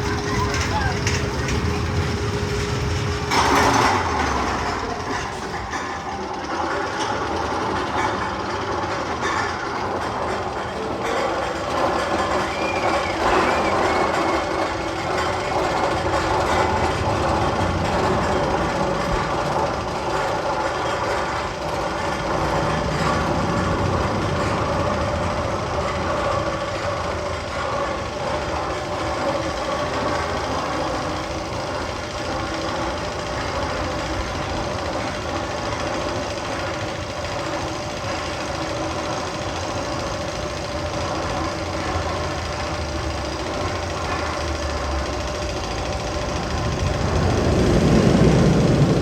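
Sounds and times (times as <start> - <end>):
held hum tones: 0.0 - 49.0
mechanical rumble over loudspeakers: 0.0 - 49.0.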